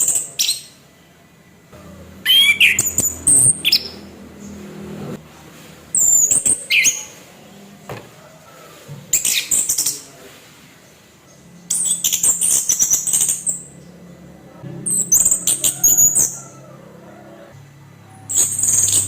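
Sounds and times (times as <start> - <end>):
faint low hum: 0.8 - 9.2
thrush singing harsh rapid notes: 1.8 - 5.2, 12.1 - 17.4.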